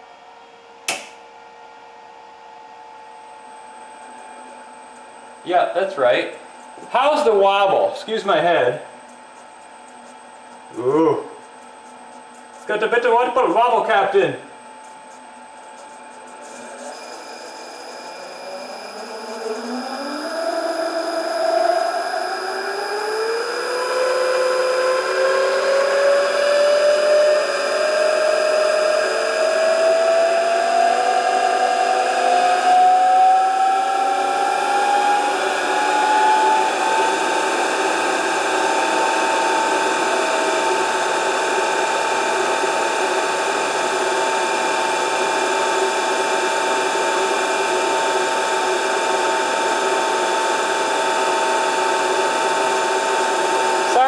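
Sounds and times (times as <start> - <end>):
electric motor whine rising: 15.7 - 54.0.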